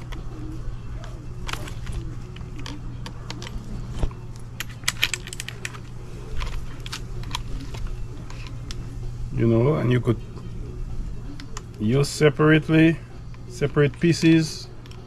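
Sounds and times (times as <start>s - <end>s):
grinder attachments clicking and rattling: 4.6s - 7.5s.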